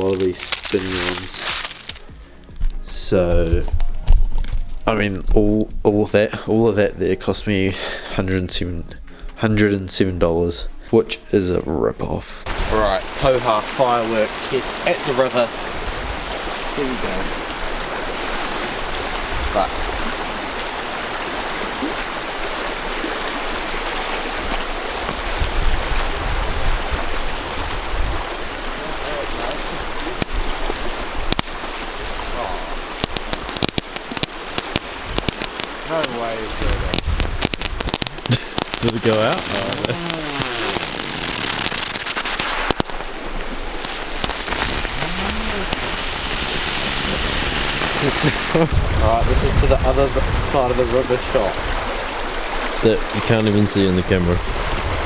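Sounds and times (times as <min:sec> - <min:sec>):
river water rushing: 0:00.0 - 0:02.1, 0:12.5 - 0:36.6, 0:38.2 - 0:49.9, 0:50.5 - 0:55.0
firecrackers popping: 0:00.0 - 0:02.2, 0:32.9 - 0:49.9
steady hiss: 0:00.0 - 0:02.4, 0:12.3 - 0:17.6, 0:32.3 - 0:51.5
low rumbling bumps: 0:36.5 - 0:40.1, 0:42.6 - 0:51.9.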